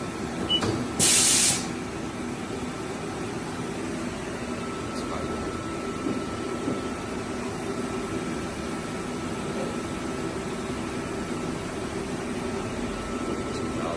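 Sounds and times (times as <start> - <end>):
air hissing: 1.0 - 1.7.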